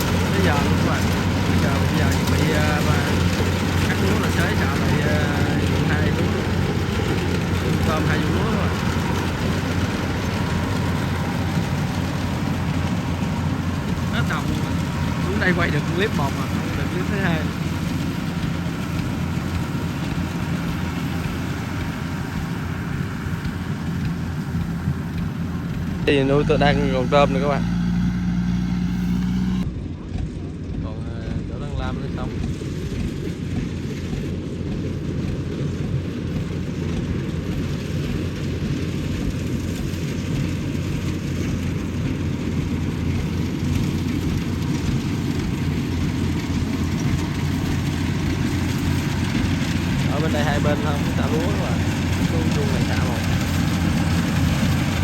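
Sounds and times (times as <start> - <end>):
combine harvester diesel engine: 0.0 - 55.0.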